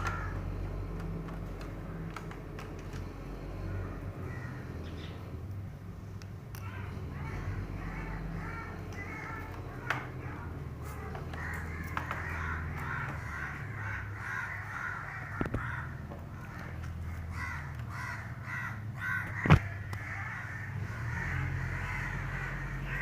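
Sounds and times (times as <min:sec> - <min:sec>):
sharp clicks: 0:00.0 - 0:03.2
crows cawing: 0:00.0 - 0:05.3, 0:06.6 - 0:23.0
steady low hum: 0:00.0 - 0:23.0.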